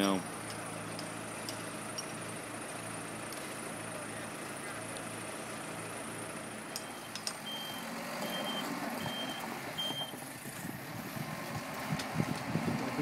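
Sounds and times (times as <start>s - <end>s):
truck engine running: 0.0s - 13.0s
truck reversing alarm beeping: 6.6s - 10.4s.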